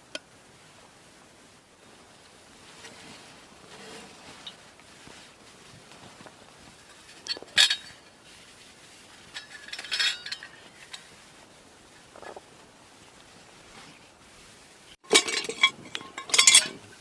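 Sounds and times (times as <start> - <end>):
ringing clatter: 9.3 - 11.0, 15.0 - 17.0
cookware clinking and knocking: 15.0 - 16.8.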